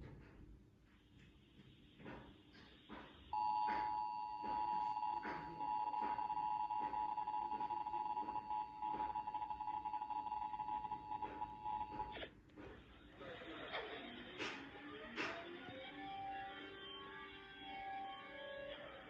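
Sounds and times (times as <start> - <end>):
two-tone electronic alert beep: 3.4 - 12.2.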